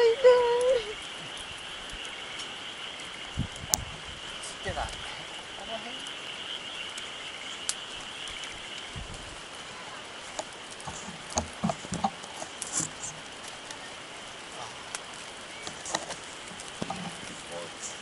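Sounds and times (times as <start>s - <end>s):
campfire crackling and popping: 0.0s - 18.0s.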